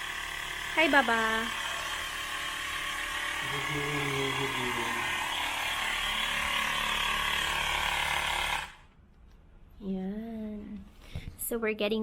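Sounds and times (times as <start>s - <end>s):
small electric motor whirring: 0.0s - 8.9s.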